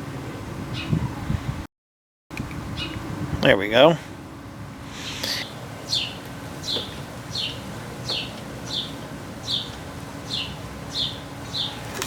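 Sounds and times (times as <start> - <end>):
bird chirping: 4.9 - 11.8.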